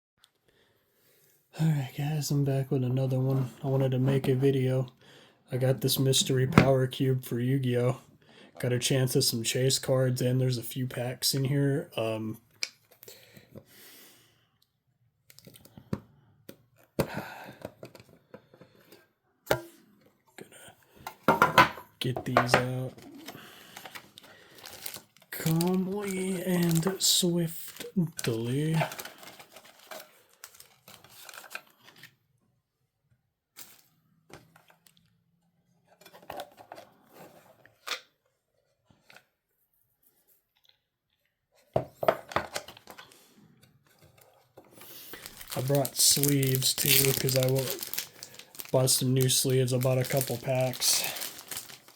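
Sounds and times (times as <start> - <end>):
packaging rustling: 22.3 - 32.1, 44.2 - 51.9
loud crinkling rustle: 23.8 - 27.8, 44.8 - 51.9.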